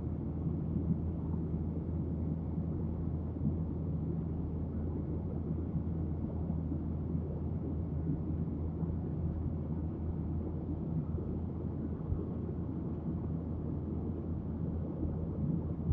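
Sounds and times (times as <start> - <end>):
jet engines rumbling in cabin: 0.0 - 15.9.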